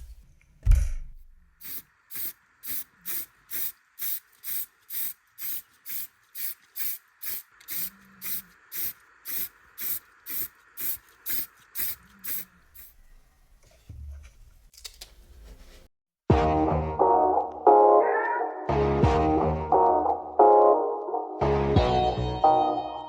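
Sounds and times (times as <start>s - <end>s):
spray bottle hissing: 1.6s - 13.0s.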